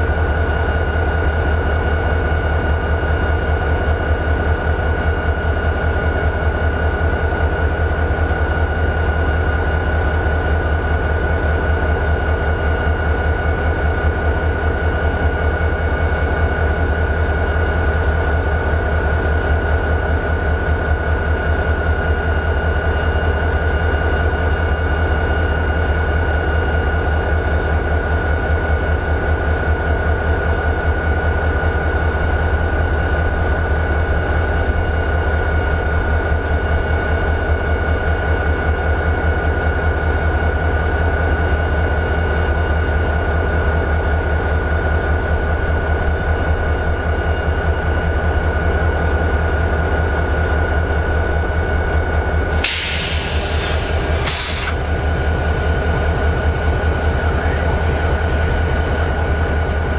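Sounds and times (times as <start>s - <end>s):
diesel locomotive idling: 0.0s - 59.9s
brief hiss: 52.6s - 54.9s.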